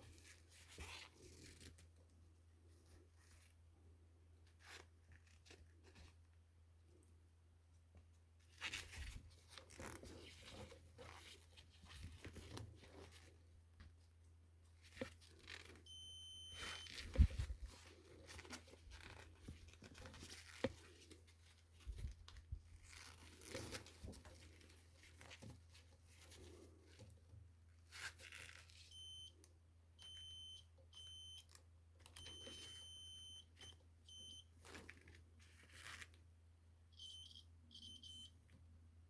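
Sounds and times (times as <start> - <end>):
low steady hum: 1.8 - 20.2, 28.9 - 35.6
short electronic beep: 15.9 - 17.4, 28.9 - 29.3, 30.0 - 31.4, 32.2 - 34.4, 37.0 - 38.4.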